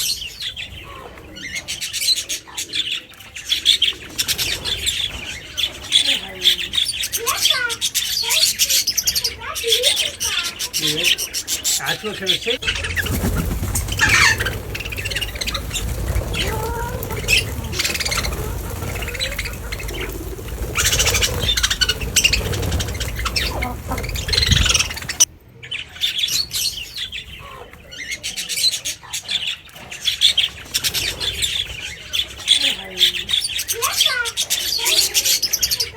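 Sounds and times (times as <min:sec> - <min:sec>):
birds squawking and chirping: 0:00.0 - 0:35.9
wind rumble on microphone: 0:12.6 - 0:25.3.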